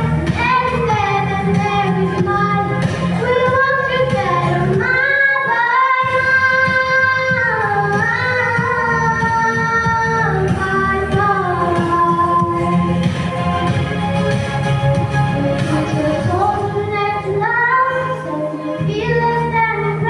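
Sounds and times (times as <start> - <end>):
children singing: 0.0 - 12.9
musical accompaniment: 0.0 - 20.0.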